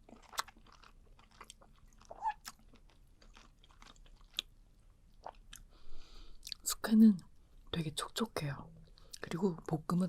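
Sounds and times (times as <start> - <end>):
person chewing with wet smacks: 0.0 - 5.7.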